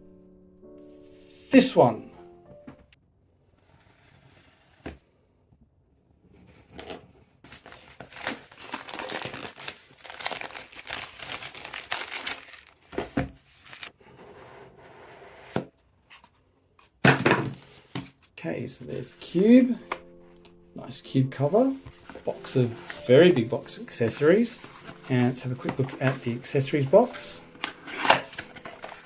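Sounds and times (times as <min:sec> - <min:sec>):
packaging tearing and crinkling: 0:07.5 - 0:13.9, 0:24.1 - 0:29.0.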